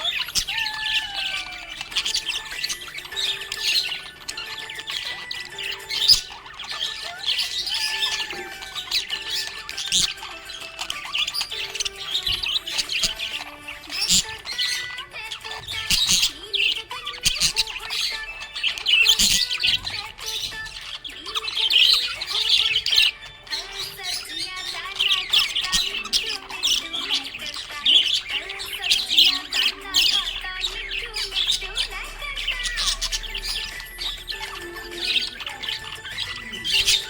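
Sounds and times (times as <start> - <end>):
budgerigar squawks: 0.0 - 37.0
budgerigars chirping: 0.0 - 37.0.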